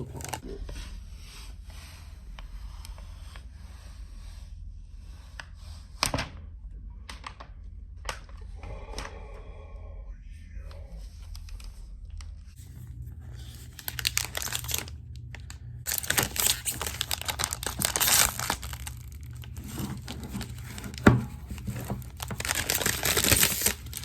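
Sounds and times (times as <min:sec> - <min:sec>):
plastic film crinkling and tearing: 0:00.0 - 0:00.4, 0:12.9 - 0:24.0.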